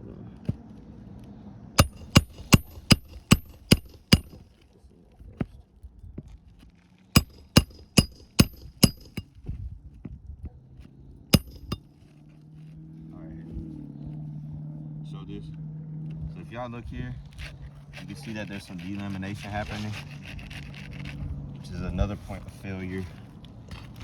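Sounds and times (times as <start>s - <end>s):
hammer striking roofing nail: 1.8s - 4.4s, 7.2s - 9.2s, 11.4s - 11.8s.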